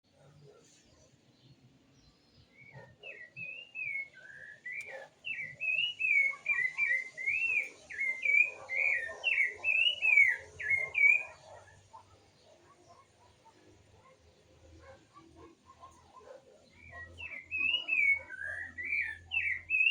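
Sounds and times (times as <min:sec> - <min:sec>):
songbird whistling: 0:02.6 - 0:11.3, 0:16.8 - 0:19.9.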